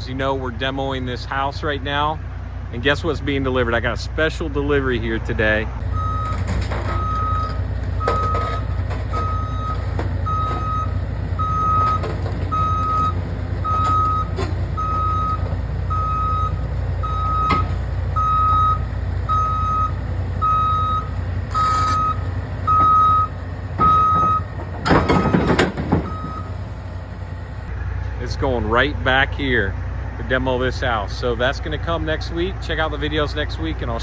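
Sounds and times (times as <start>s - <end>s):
truck engine running: 0.0s - 34.0s
reversing alarm beeping: 5.8s - 26.9s.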